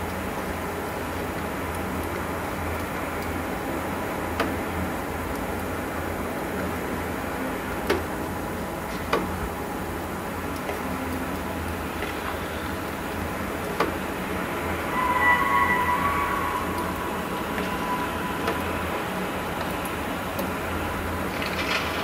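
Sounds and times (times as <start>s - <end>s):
drawn-out two-pitch tone: 14.7s - 19.6s.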